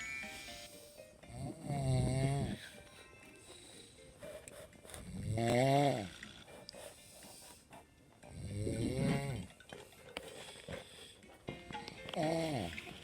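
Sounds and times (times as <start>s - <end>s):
woman snoring: 1.4s - 2.8s, 5.1s - 6.5s.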